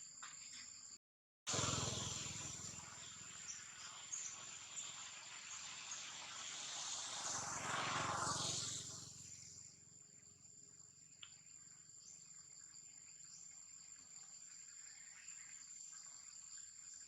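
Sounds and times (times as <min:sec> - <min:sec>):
insects trilling: 0:00.1 - 0:17.0
broad rushing noise: 0:05.4 - 0:09.5.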